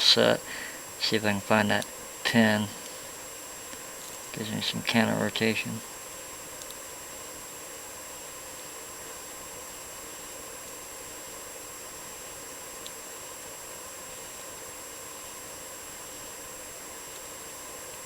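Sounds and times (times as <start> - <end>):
background hiss: 0.0 - 18.0
faint high whine: 0.0 - 18.0
faint click: 6.6 - 6.8.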